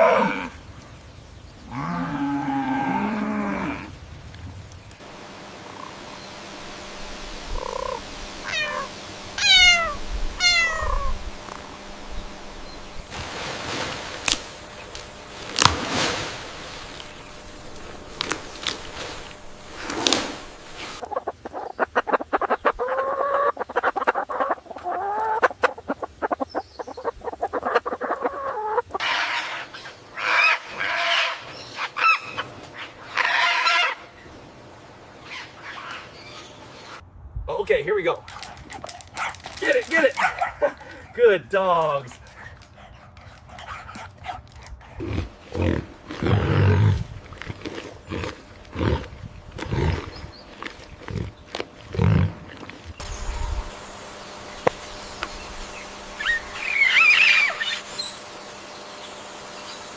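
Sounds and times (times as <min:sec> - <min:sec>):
chickens clucking: 0:05.6 - 0:13.2, 0:16.8 - 0:30.7.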